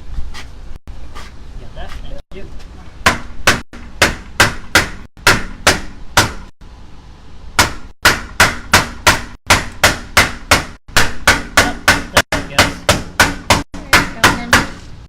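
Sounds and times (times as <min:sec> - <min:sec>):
hammer blows on wooden board: 0:07.6 - 0:15.0.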